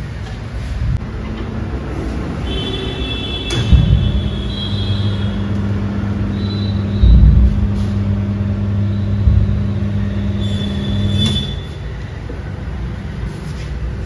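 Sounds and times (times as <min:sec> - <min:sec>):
machine humming low: 0:00.9 - 0:13.1
heavy thump: 0:03.5 - 0:04.5, 0:06.8 - 0:08.2, 0:09.1 - 0:10.0.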